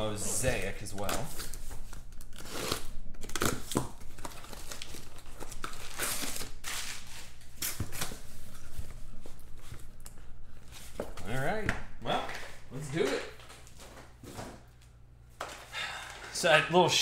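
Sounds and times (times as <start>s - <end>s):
packaging crinkling and tearing: 0.6s - 8.1s.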